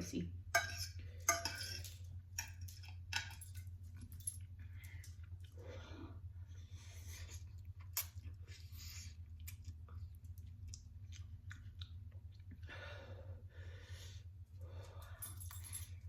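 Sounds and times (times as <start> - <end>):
low steady hum: 0.0 - 16.0
person chewing noodles: 6.6 - 12.8.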